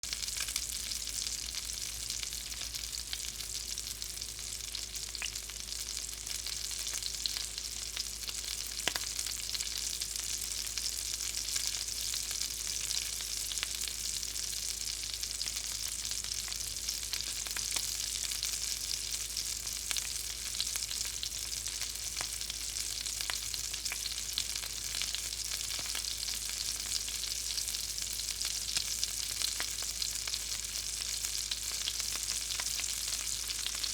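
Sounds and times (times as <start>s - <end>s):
grease sizzling in a pan: 0.0s - 33.9s.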